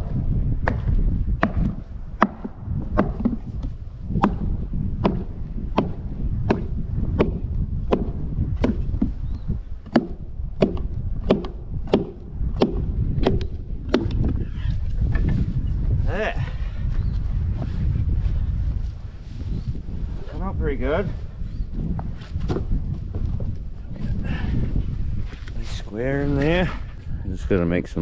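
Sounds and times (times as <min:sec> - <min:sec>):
tool chopping wooden log: 0:00.6 - 0:09.2, 0:09.8 - 0:14.3.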